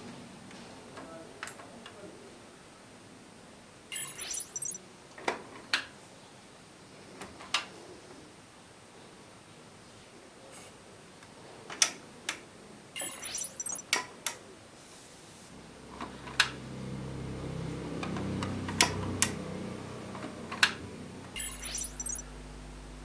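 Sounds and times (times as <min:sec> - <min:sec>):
sharp mechanical clicks: 0:21.4 - 0:22.2.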